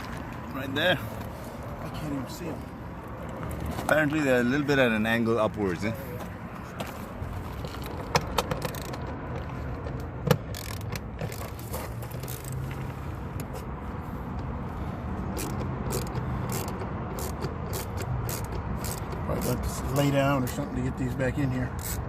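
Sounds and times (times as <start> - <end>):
hand tool clicks and scrapes: 6.7 - 14.5, 15.2 - 21.0, 21.6 - 22.0.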